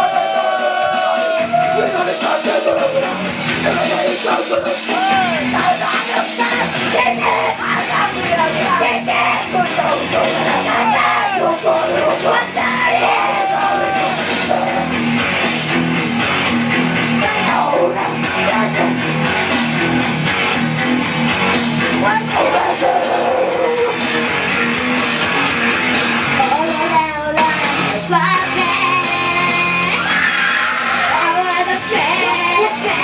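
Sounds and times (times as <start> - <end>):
girls singing: 0.0 - 14.8, 17.2 - 19.0, 22.0 - 24.0, 26.6 - 33.0
guitar: 0.0 - 33.0.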